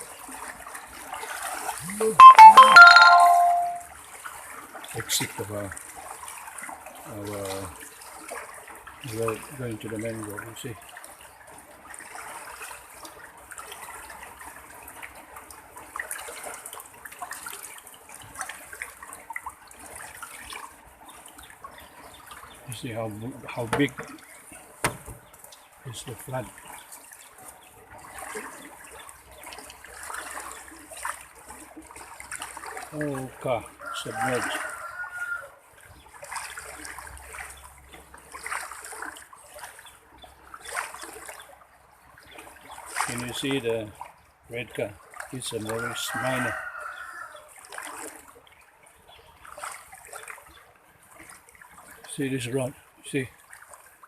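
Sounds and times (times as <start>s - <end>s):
floodwater rushing and splashing: 0.0s - 54.0s.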